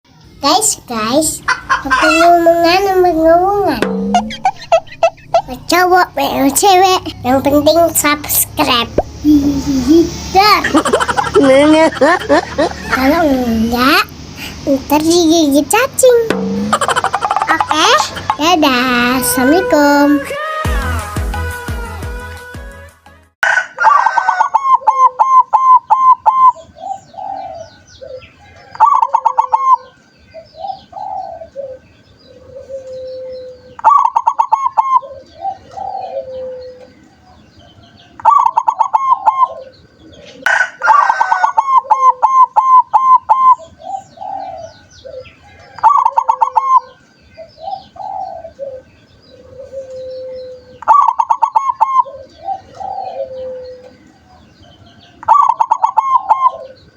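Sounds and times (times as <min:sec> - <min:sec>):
dove cooing: 0:01.0 - 0:08.2, 0:16.3 - 0:20.2, 0:23.5 - 0:56.9.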